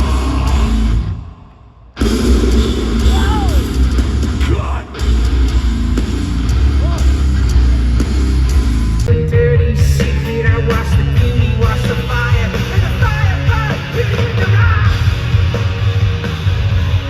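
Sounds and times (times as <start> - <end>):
heavy rock band playing: 0.0 - 17.0
person yelling and singing: 3.0 - 3.8, 6.8 - 7.2, 9.2 - 15.0.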